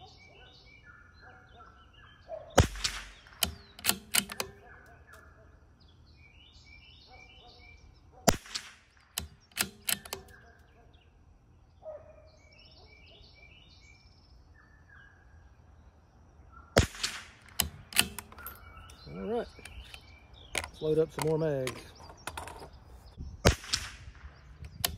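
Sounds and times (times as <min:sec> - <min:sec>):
birds chirping: 0:00.0 - 0:24.9
rifle bolt clicking: 0:02.6 - 0:04.7, 0:08.4 - 0:10.4, 0:17.0 - 0:22.8
rifle shots: 0:02.6 - 0:04.7, 0:08.3 - 0:10.4, 0:16.8 - 0:18.6, 0:23.4 - 0:24.9.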